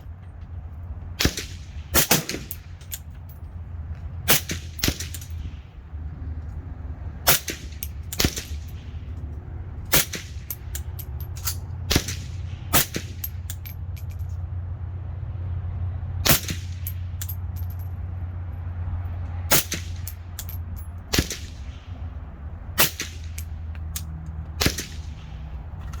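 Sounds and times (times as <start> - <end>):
suppressed rifle shots: 1.2 - 2.6, 11.9 - 13.3, 24.6 - 25.4.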